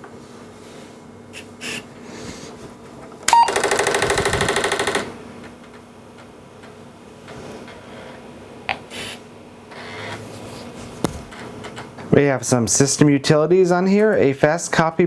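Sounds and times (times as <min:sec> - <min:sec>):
floppy drive rattling: 0:03.6 - 0:05.1.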